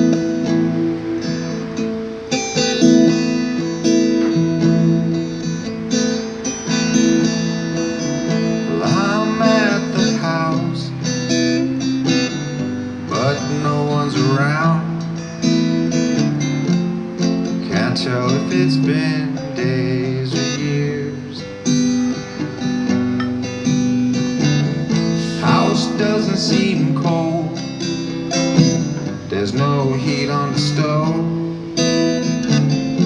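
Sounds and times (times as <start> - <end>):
acoustic guitar strumming: 0.0 - 33.0
sliding melodic line: 23.0 - 24.1.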